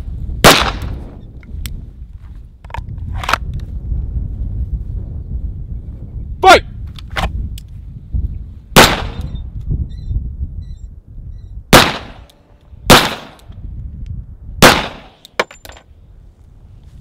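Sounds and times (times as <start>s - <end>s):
pistol shots echoing: 8.8s - 9.2s, 11.7s - 12.3s, 12.9s - 13.5s, 14.6s - 15.3s.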